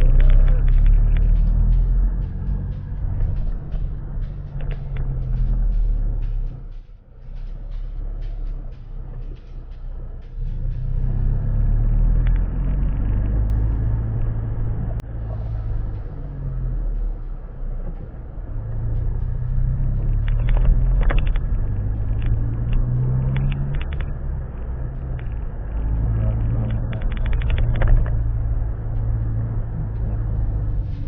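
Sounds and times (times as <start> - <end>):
vehicle engine rumbling: 0.0 - 31.0
rapid clicking: 20.0 - 30.8.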